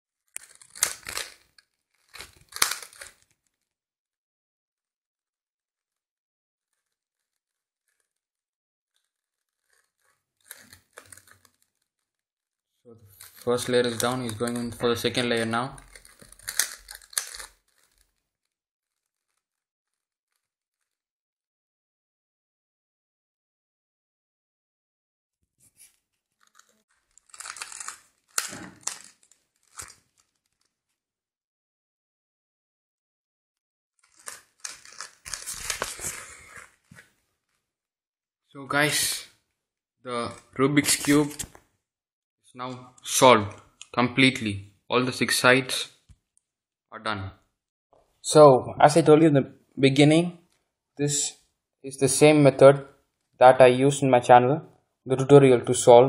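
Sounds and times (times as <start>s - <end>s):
puzzle cube clicking turns: 0.4s - 3.3s, 9.2s - 11.6s, 15.8s - 18.1s, 26.4s - 30.0s, 34.0s - 36.8s.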